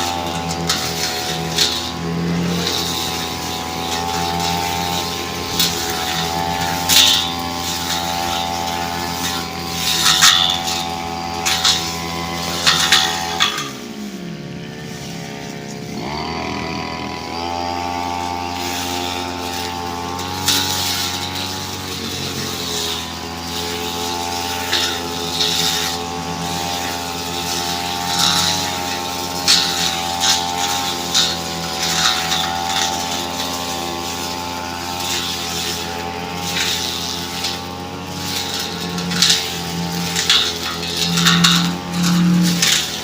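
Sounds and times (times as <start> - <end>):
blade crackling through brush: 0.0 - 43.0
brush cutter engine running: 0.0 - 43.0.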